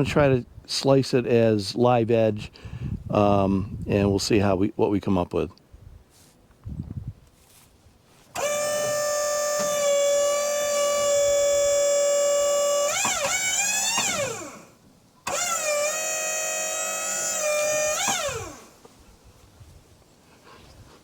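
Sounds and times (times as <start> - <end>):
band saw whining through log: 8.3 - 18.8.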